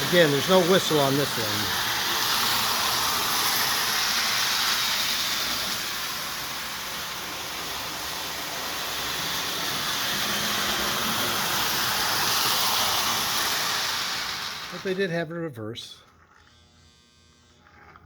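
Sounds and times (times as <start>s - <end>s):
toy train rattling along track: 0.0s - 15.2s.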